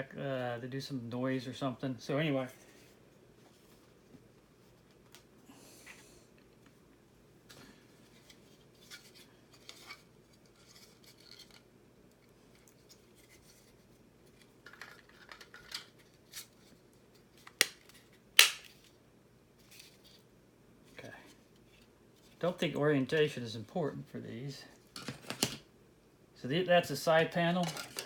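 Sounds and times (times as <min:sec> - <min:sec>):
plastic parts clicking and rustling: 0:07.5 - 0:18.9, 0:24.8 - 0:25.7, 0:27.5 - 0:28.0.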